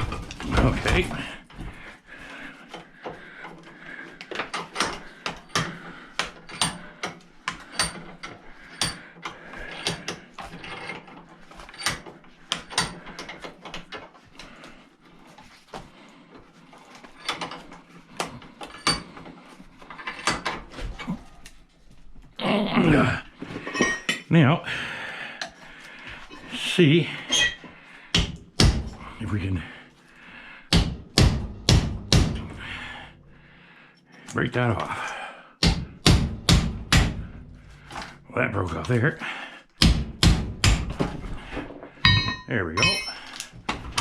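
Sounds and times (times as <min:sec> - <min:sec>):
hammer striking chisel on metal: 0:42.0 - 0:43.2.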